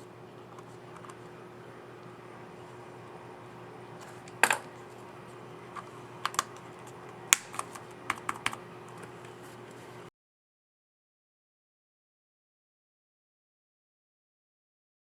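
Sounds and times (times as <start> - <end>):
laptop keys clicking: 6.2 - 9.4.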